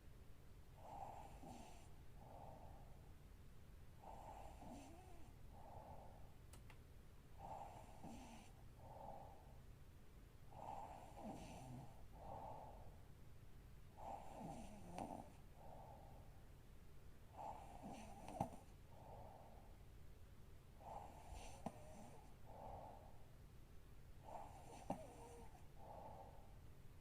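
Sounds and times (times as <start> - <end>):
woman snoring quietly: 0.8 - 2.8, 4.0 - 5.4, 7.4 - 9.4, 10.5 - 12.8, 14.0 - 16.0, 17.3 - 19.5, 20.8 - 23.1, 24.2 - 26.5.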